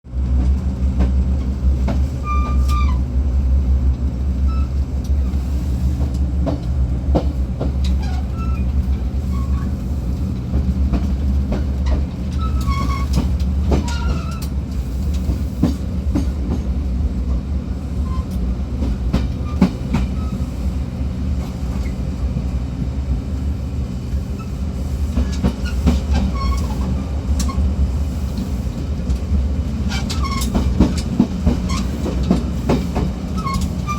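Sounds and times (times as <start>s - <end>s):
train engine and running gear rumble: 0.0s - 33.9s
short high squeaks: 2.3s - 3.0s, 26.2s - 26.8s.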